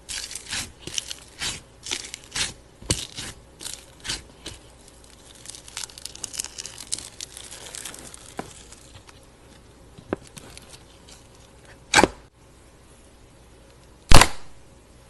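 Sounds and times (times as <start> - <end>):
slime popping: 0.1 - 9.2.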